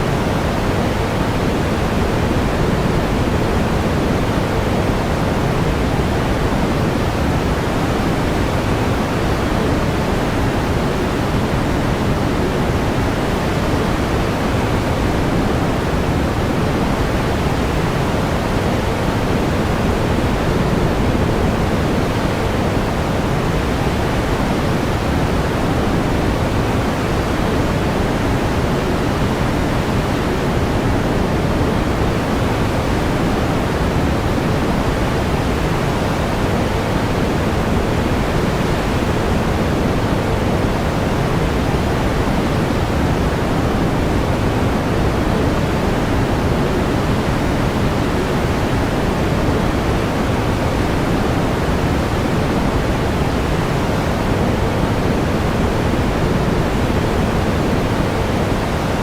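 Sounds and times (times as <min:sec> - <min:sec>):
pink noise hiss: 0:00.0 - 0:59.0.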